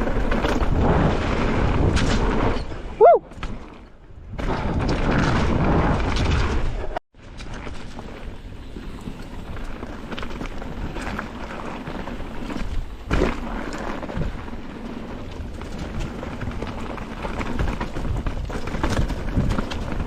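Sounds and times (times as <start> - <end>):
bike rattling: 0.0 - 20.0
bike tyres rumbling over rocks: 0.0 - 20.0
wind noise on microphone: 0.0 - 20.0.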